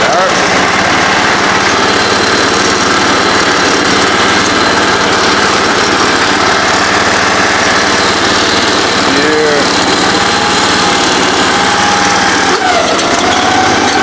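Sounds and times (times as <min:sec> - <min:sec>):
riding lawn mower engine running: 0:00.0 - 0:14.0.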